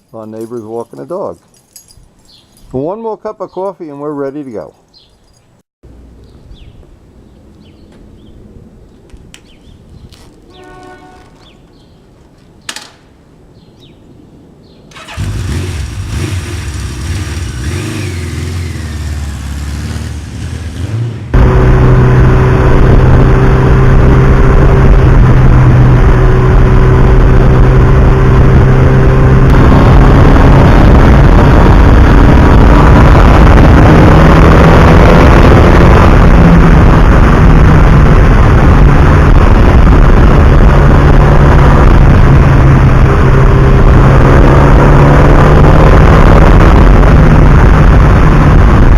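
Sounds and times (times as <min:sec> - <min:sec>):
heavy wind rush: 0:21.2 - 0:48.9.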